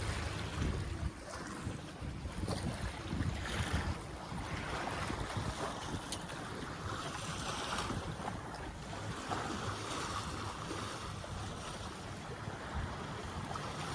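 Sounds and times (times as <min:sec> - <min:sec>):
water rushing along a boat hull: 0:00.0 - 0:13.9
wind buffeting microphone: 0:00.0 - 0:13.9.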